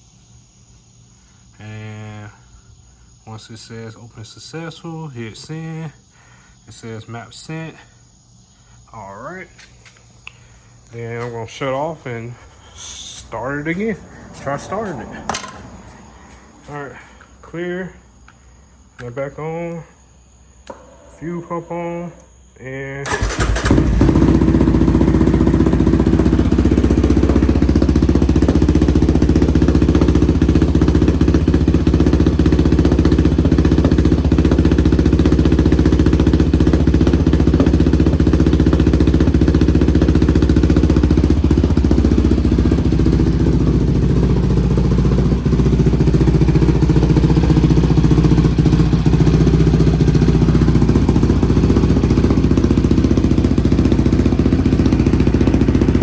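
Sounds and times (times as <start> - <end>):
engine idling: 23.1 - 56.0.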